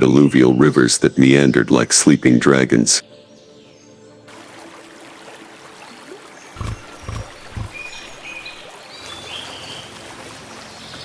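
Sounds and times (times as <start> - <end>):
steady forest hiss: 4.3 - 11.0.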